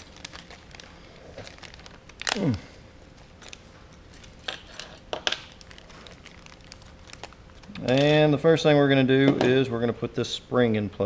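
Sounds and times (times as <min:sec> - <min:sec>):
packaging clicks and crinkles: 0:00.0 - 0:08.3.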